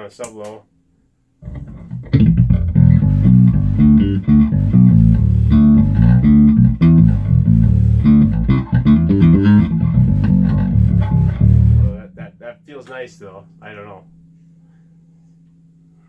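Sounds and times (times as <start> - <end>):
electric bass guitar notes: 1.4 - 13.5.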